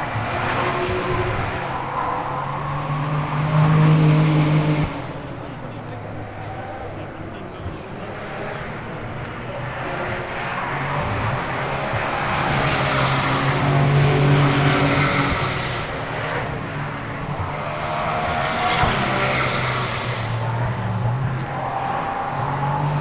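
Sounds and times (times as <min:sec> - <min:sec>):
racing cars passing at speed: 0:00.0 - 0:23.0.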